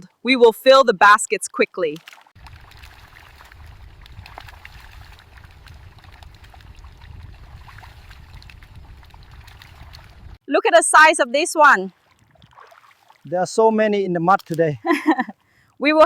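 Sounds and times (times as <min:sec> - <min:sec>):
shallow water sloshing and trickling: 0:01.8 - 0:10.4, 0:11.6 - 0:13.6.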